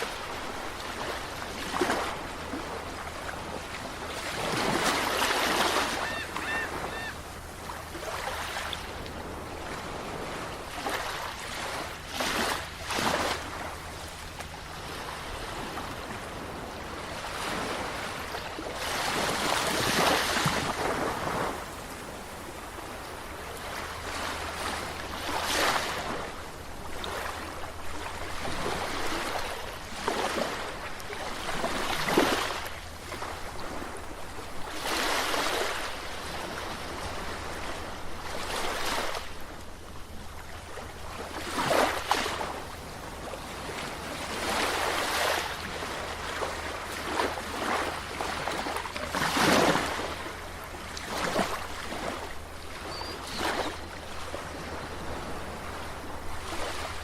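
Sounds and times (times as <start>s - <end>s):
sea waves washing: 0.0s - 57.0s.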